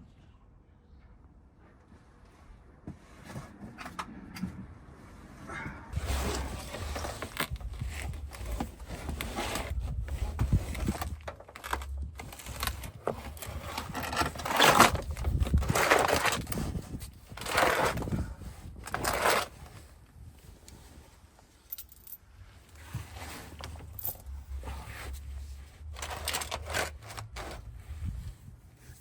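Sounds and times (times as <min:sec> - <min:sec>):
scraping and rustling of parts: 0:05.9 - 0:29.0.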